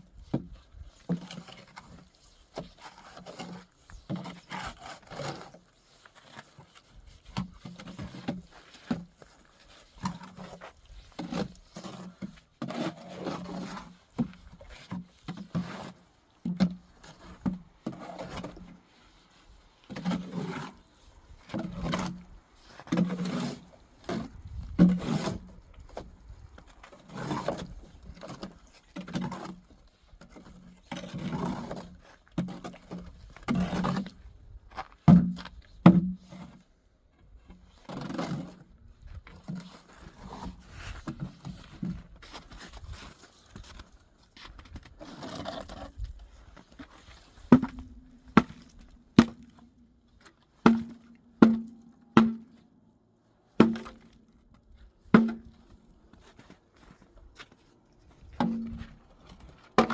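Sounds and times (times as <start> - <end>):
metal tool scraping mortar: 1.0 - 25.6, 30.3 - 34.2.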